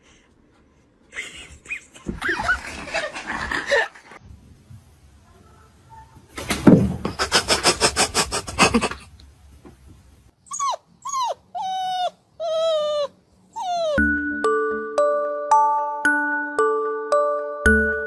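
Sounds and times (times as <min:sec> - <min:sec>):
dog whining: 0:10.4 - 0:14.1.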